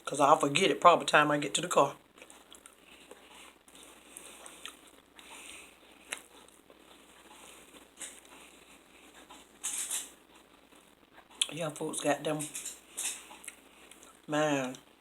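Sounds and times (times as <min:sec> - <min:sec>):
person chewing food: 0:02.1 - 0:11.5, 0:12.5 - 0:14.9.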